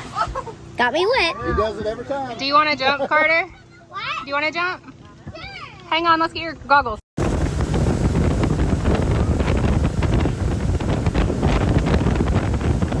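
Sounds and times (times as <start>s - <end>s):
water rushing and splashing: 7.2s - 13.0s
wind buffeting microphone: 7.2s - 13.0s.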